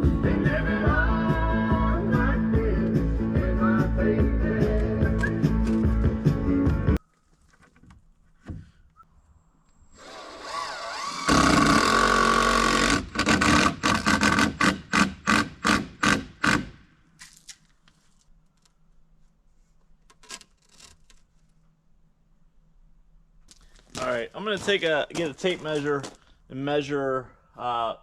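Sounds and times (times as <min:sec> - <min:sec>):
cordless drill driving screw: 0:10.0 - 0:16.7.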